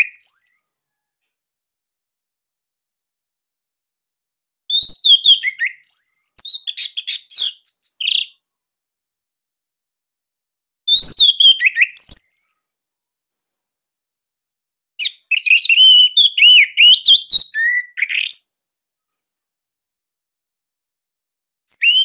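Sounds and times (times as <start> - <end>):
thrush singing whistled notes: 0.0 - 0.7, 4.7 - 8.4, 10.9 - 12.6, 15.0 - 18.5, 21.7 - 22.0.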